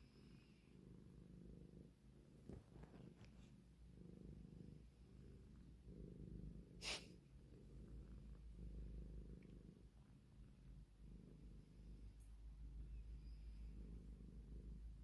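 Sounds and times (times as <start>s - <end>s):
cat purring: 0.0s - 15.0s
cat breathy puff: 6.8s - 7.2s.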